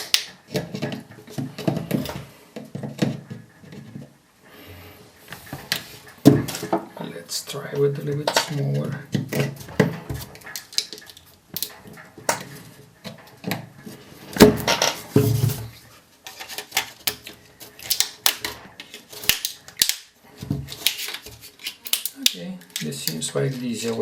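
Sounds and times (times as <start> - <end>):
tool scraping plastic: 8.2 - 24.0.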